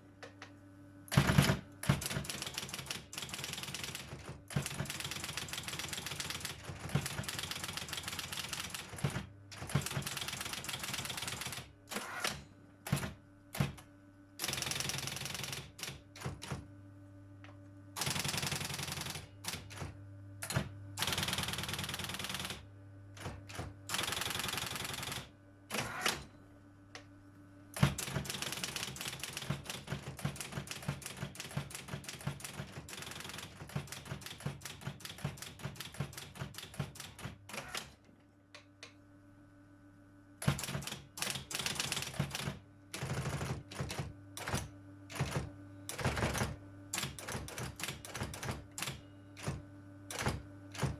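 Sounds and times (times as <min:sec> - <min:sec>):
typewriter keystrokes: 0:01.1 - 0:16.6, 0:18.0 - 0:22.6, 0:23.2 - 0:26.3, 0:27.8 - 0:38.0, 0:40.4 - 0:50.9
steady low hum: 0:08.6 - 0:24.0.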